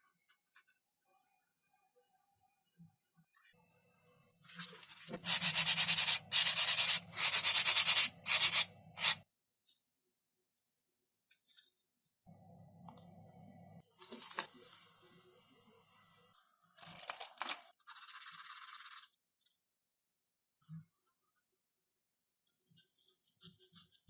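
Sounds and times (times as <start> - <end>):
sandpaper rasping on foam: 4.6 - 9.2.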